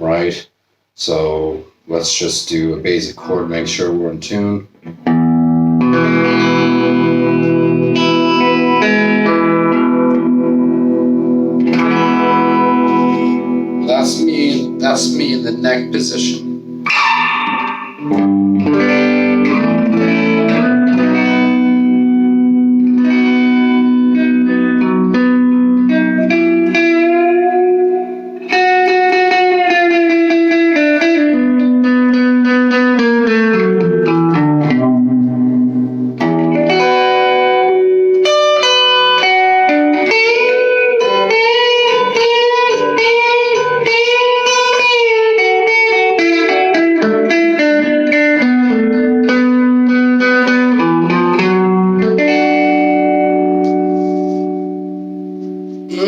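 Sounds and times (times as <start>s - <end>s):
clean electric guitar: 1.1s - 56.0s.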